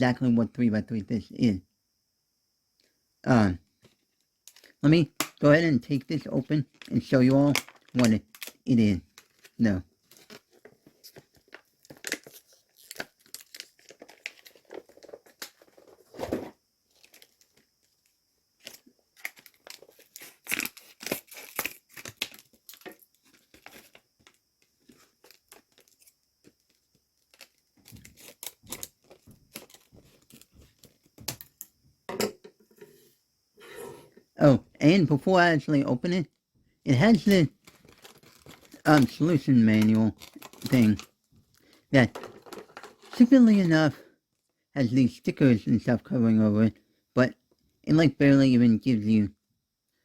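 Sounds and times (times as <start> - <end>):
packaging crinkling and tearing: 6.6 - 18.0, 18.6 - 31.0, 37.2 - 43.3.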